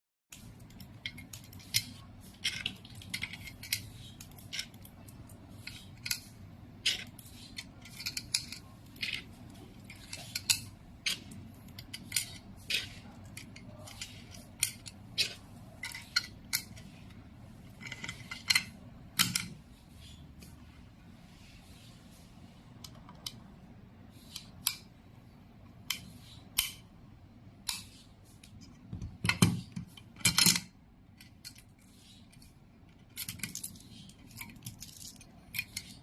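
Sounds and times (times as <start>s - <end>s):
metal parts clicking and clinking: 0.3s - 19.6s, 28.7s - 36.0s
low steady hum: 0.3s - 36.0s.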